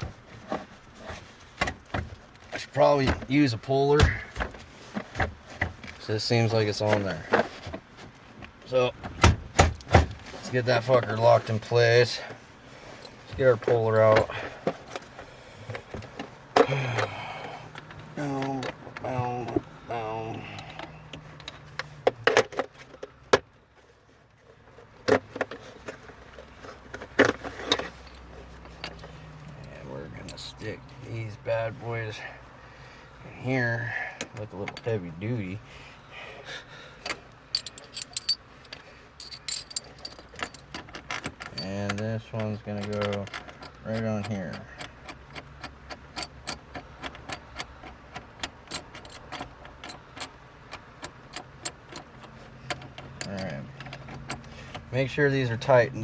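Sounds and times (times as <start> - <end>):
metal tools knocking and clinking: 37.1 - 54.4.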